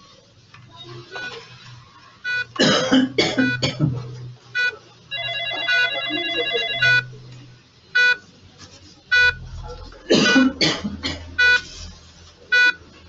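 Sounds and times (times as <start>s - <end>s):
person coughing: 2.6s - 4.1s, 10.1s - 11.3s
short electronic beeps: 8.0s - 8.2s, 9.1s - 9.4s, 11.4s - 11.6s, 12.5s - 12.8s.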